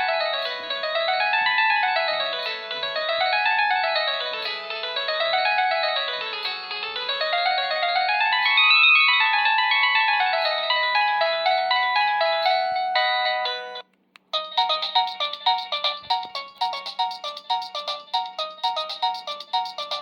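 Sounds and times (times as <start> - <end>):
phone ringtone synthesized notes: 14.4 - 20.0.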